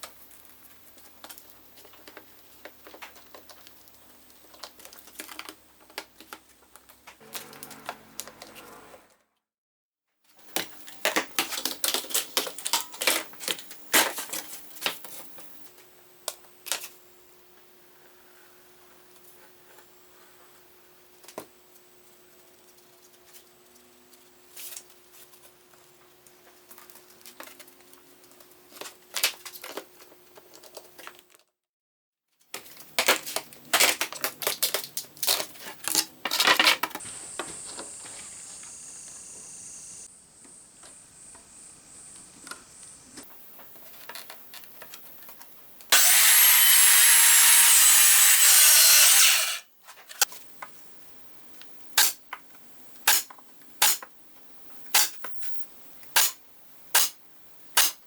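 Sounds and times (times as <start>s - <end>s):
power tool whining: 45.9s - 49.6s.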